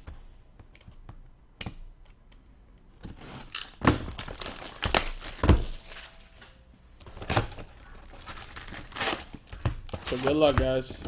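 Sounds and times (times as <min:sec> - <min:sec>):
plastic rustling: 0:03.2 - 0:06.6, 0:07.2 - 0:11.0.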